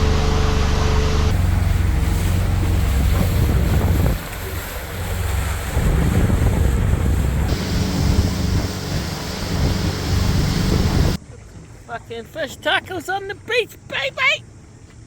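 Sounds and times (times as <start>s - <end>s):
boat motor running: 0.0s - 15.0s
wind buffeting microphone: 1.3s - 11.2s.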